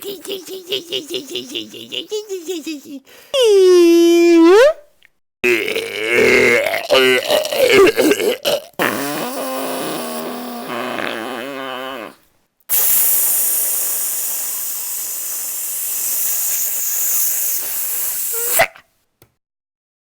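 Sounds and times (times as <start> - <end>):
person making vocal tone: 1.1 - 4.8
person making hissing sound: 8.3 - 18.8.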